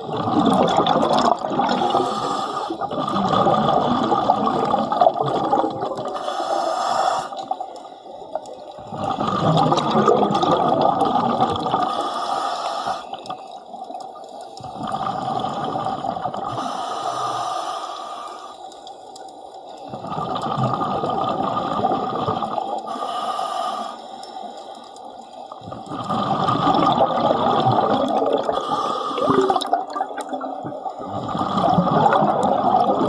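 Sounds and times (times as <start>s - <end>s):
exhaled bubbles gurgling: 0.0s - 17.5s, 19.1s - 33.0s
hissing inhaled breaths: 1.7s - 3.0s, 6.1s - 9.3s, 11.8s - 20.3s, 22.7s - 26.3s, 28.4s - 29.6s.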